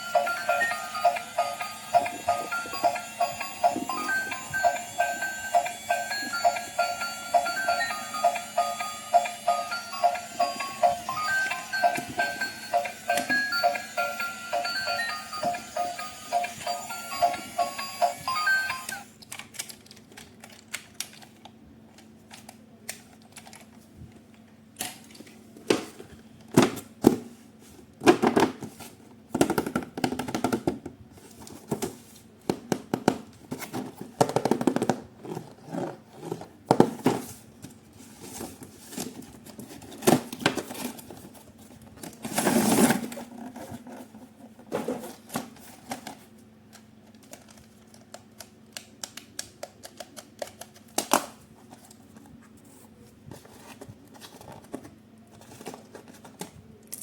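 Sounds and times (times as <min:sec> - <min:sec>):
plastic toy parts clicking: 0:19.2 - 0:23.7, 0:47.1 - 0:51.3.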